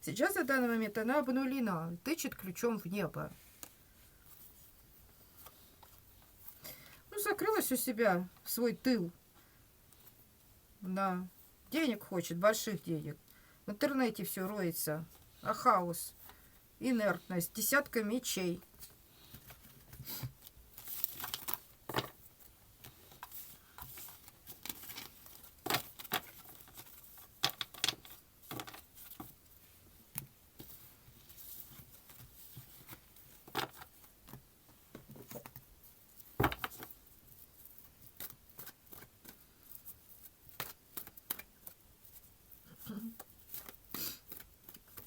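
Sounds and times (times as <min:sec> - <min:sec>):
paper rustling: 0:18.8 - 0:29.3.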